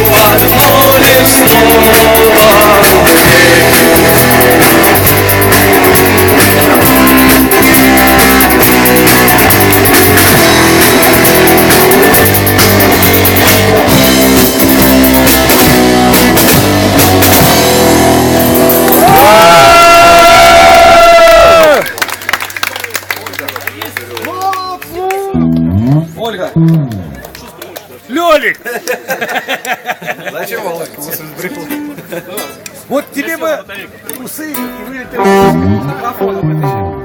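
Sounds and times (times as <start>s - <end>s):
drum kit: 0.0s - 21.0s
bass guitar: 0.0s - 21.8s, 24.8s - 27.6s, 34.6s - 37.0s
electric guitar: 0.0s - 21.8s, 34.6s - 37.0s.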